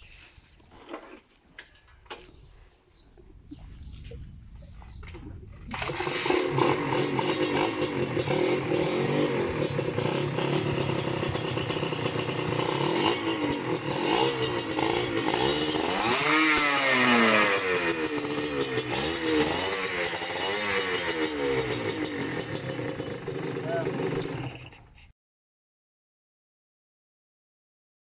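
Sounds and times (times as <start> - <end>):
two-stroke motorcycle engine revving: 5.7 - 24.8.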